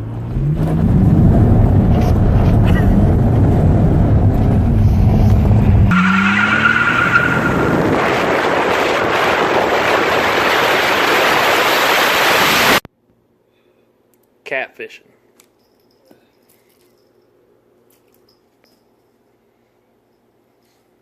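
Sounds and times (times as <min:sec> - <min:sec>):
car rumble: 0:00.0 - 0:12.8
loud rushing noise: 0:07.3 - 0:12.8.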